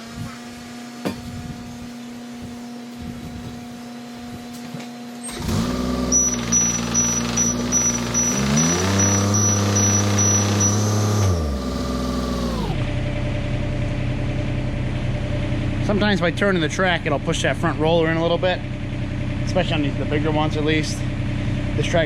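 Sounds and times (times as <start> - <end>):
excavator diesel engine: 0.8 - 22.0
hydraulics rushing: 1.2 - 12.9
high even beeping: 6.1 - 11.9.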